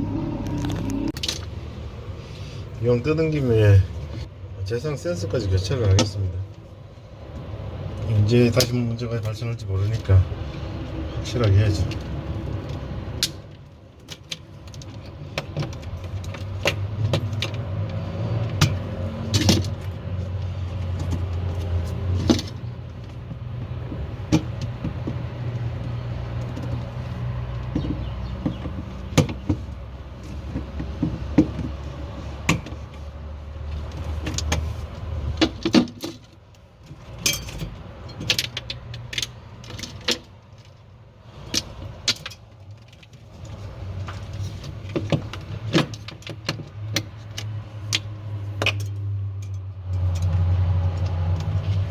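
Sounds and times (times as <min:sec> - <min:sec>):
tools and parts clicking: 0:35.4 - 0:40.8.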